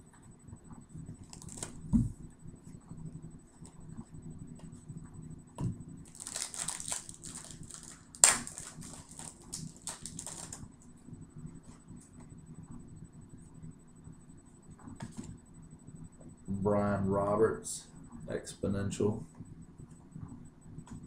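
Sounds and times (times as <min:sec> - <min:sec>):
foil wrapper crinkling: 0:01.3 - 0:01.8, 0:06.1 - 0:10.6
wrapper ripping: 0:06.1 - 0:10.6.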